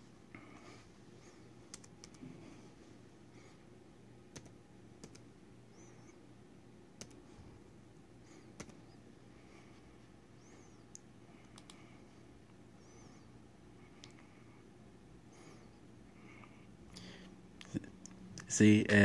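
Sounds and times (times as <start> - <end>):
computer keyboard clicks: 1.7 - 2.2, 4.3 - 5.3, 7.0 - 7.2, 8.6 - 8.8, 11.4 - 11.8
faint high chirps: 5.7 - 6.2.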